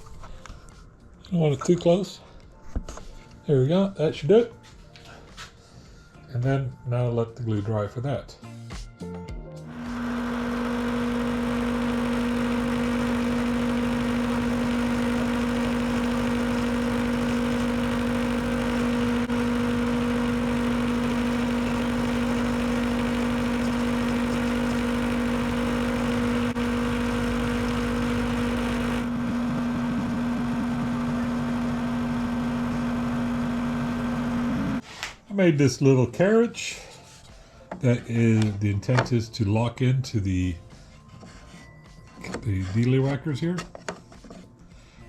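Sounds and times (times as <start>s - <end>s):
power tool motor whirring: 9.7s - 34.8s.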